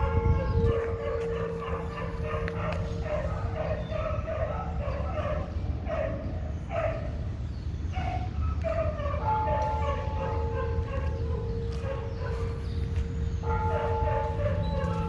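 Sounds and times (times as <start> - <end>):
temple bell humming: 0.0 - 3.9, 9.2 - 15.0
dog yelping and howling: 0.0 - 7.1, 7.9 - 12.6, 13.5 - 15.0.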